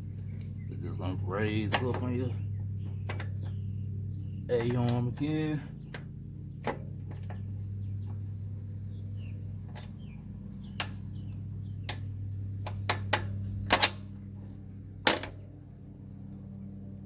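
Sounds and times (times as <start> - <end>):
steady low hum: 0.0 - 17.0
light metal clicks and knocks: 1.6 - 2.2, 2.8 - 3.6, 4.5 - 8.2, 11.9 - 14.1, 15.0 - 15.4.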